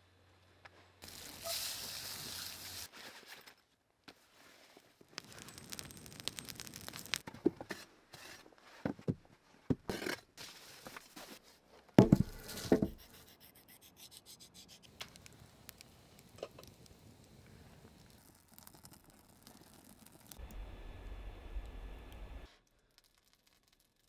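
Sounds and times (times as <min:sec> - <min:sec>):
hand work scraping and knocking: 0:12.0 - 0:14.9.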